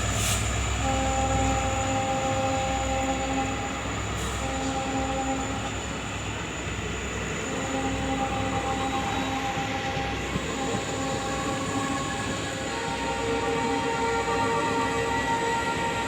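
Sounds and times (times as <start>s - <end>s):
diesel locomotives humming: 0.0s - 16.0s
low train rumble: 0.0s - 16.0s.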